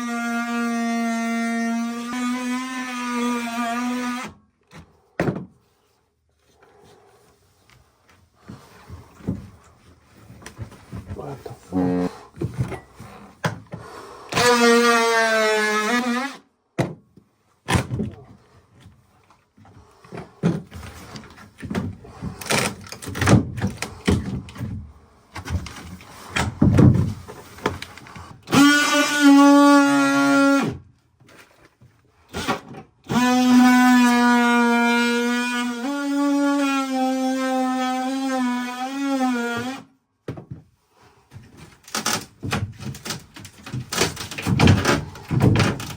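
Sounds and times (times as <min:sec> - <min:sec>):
knocks and scraping: 0:04.7 - 0:13.9, 0:39.6 - 0:45.9.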